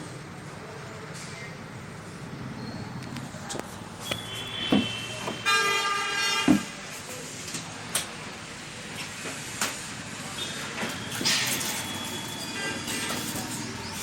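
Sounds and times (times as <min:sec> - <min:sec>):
traffic noise: 0:00.0 - 0:14.0
vehicle horn honking: 0:04.0 - 0:06.7, 0:11.9 - 0:13.3.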